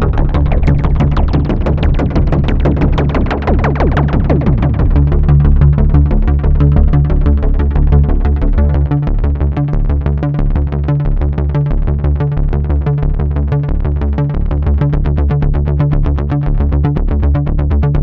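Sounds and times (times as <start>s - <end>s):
synthesizer bass pattern: 0.0s - 18.0s.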